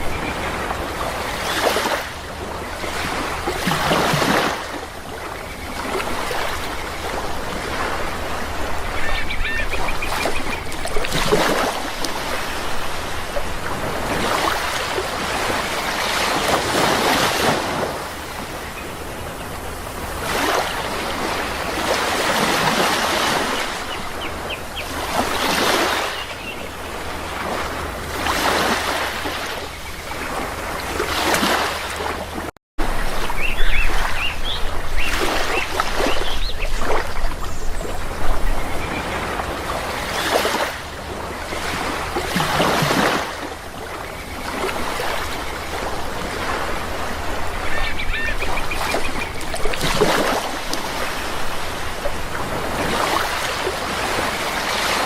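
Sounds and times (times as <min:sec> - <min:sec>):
sea waves breaking: 0:00.0 - 0:55.0
faint bird calls: 0:08.8 - 0:11.0, 0:47.4 - 0:49.7.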